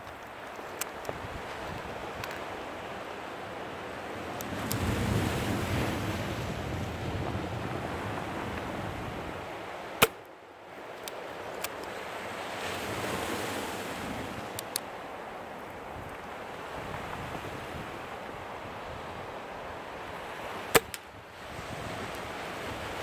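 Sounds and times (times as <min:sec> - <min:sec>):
faint clicks: 0:00.0 - 0:02.7, 0:04.3 - 0:04.9, 0:10.0 - 0:12.0, 0:14.4 - 0:14.9
wind noise: 0:00.0 - 0:10.0, 0:11.0 - 0:23.0
air pistol shot: 0:10.0 - 0:10.3, 0:20.7 - 0:21.2.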